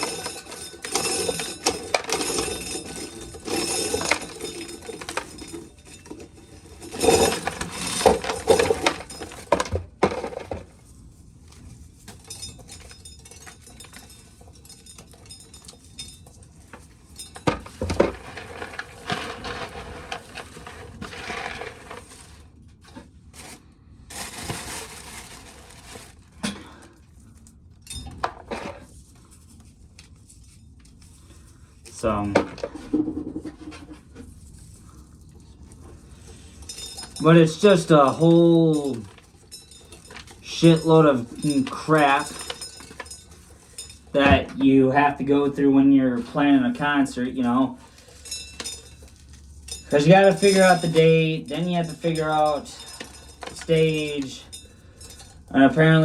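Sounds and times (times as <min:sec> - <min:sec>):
corn kernels clattering into bucket: 0:00.0 - 0:10.7, 0:36.6 - 0:56.0.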